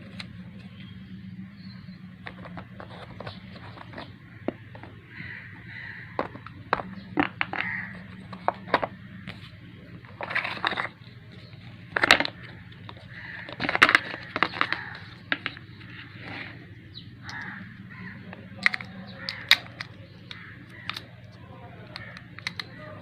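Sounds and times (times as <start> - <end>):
steady low hum: 0.0 - 23.0
packaging crinkling: 18.6 - 21.1, 21.8 - 22.8
sharp clicks and taps: 21.8 - 22.8.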